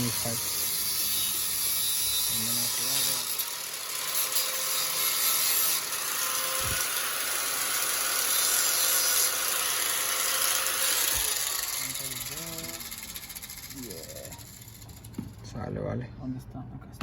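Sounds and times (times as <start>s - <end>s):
ratchet wrench clicking: 11.0s - 15.2s.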